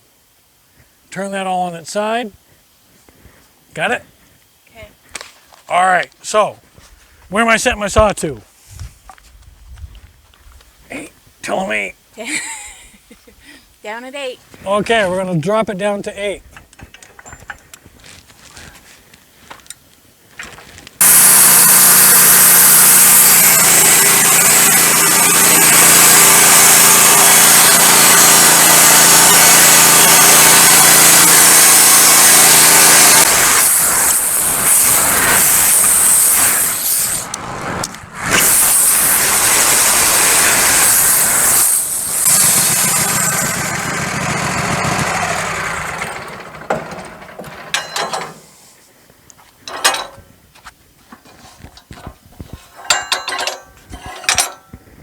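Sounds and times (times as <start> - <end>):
band sawmill engine running: 21.0 - 48.4.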